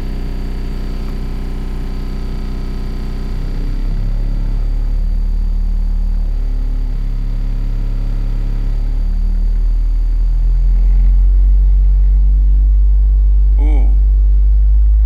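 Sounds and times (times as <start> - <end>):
deep bass test tones: 10.0 - 15.0.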